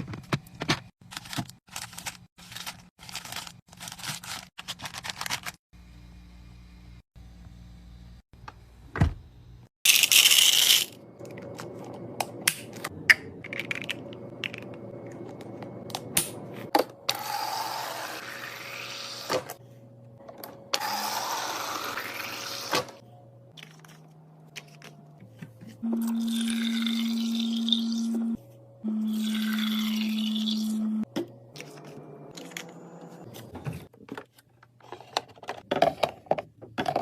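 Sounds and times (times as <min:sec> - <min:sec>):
items clicking and knocking: 0:11.2 - 0:17.0, 0:33.4 - 0:37.0.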